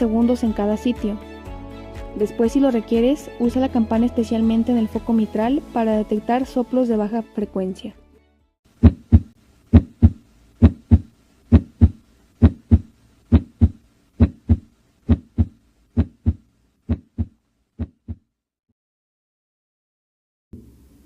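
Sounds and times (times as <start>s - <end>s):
heartbeat lub-dub: 8.8s - 18.2s.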